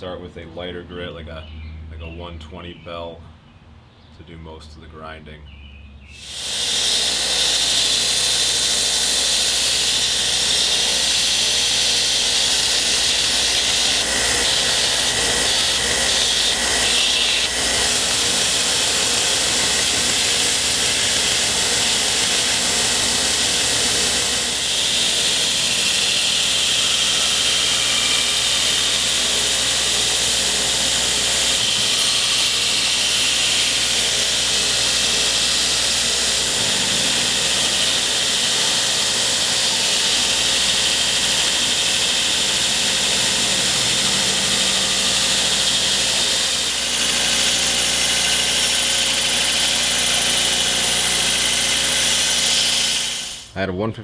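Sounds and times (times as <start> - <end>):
belt grinder grinding steel: 6.2 - 53.6.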